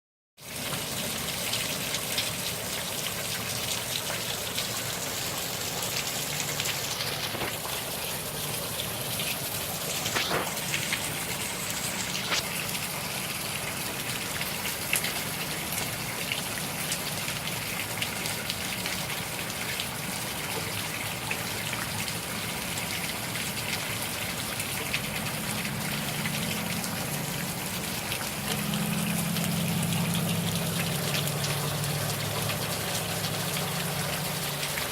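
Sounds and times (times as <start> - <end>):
heavy rain downpour: 0.4 - 34.9
water running off: 3.0 - 16.0, 24.3 - 34.9.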